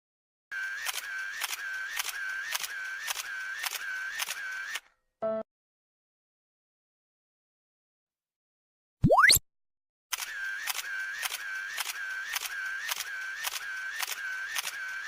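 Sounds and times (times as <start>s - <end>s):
click-and-tone blips: 9.0s - 9.4s
upward pitch sweep: 9.0s - 9.4s.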